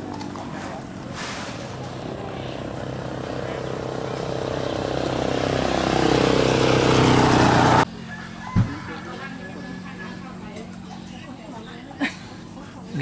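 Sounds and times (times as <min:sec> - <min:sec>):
vehicle approaching on road: 0:00.0 - 0:13.0.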